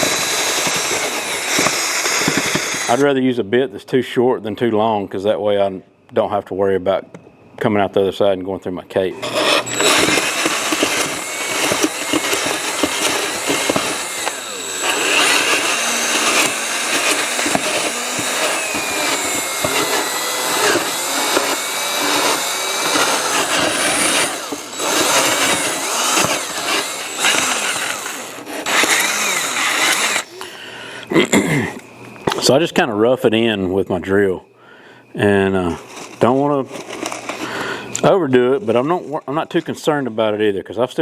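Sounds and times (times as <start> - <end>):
power drill grinding into foam: 0.0 - 3.1, 9.1 - 30.6, 35.5 - 39.1.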